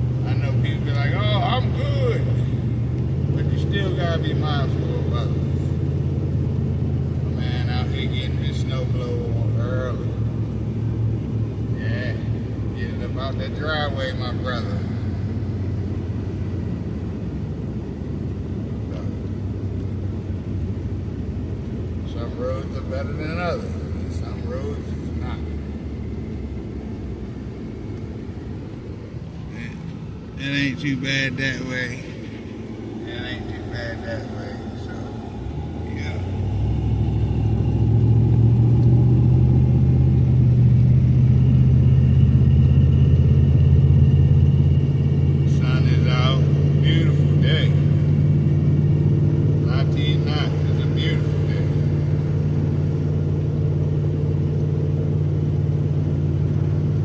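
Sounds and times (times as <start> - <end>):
pickup engine and tyre rumble: 0.0 - 57.0
road noise: 0.0 - 57.0
faint high whine: 22.2 - 38.6.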